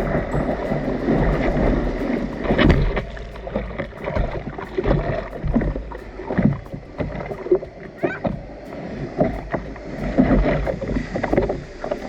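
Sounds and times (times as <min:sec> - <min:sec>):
sea water splashing: 0:00.0 - 0:12.0.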